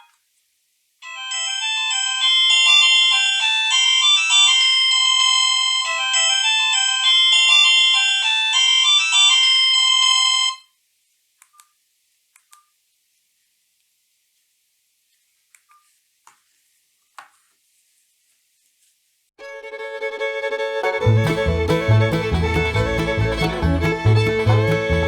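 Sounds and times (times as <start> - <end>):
electronic phone ringtone melody: 1.1 - 10.7.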